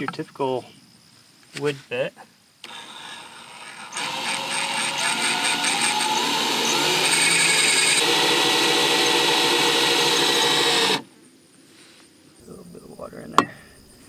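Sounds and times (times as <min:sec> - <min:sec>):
electric drill drilling tile: 0:02.6 - 0:11.0.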